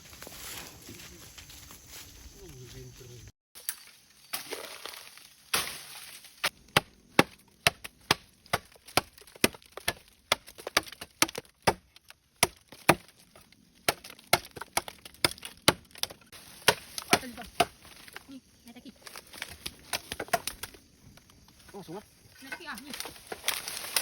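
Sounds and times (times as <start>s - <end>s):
blade chopping bamboo: 5.5s - 17.8s.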